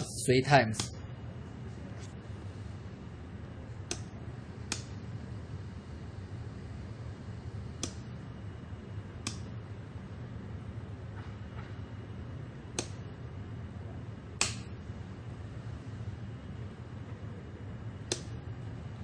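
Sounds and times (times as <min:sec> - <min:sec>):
light switch clicking: 0:03.9 - 0:04.1, 0:04.7 - 0:04.9, 0:07.8 - 0:08.1, 0:09.2 - 0:09.5, 0:12.7 - 0:13.0, 0:14.4 - 0:14.7, 0:18.1 - 0:18.4.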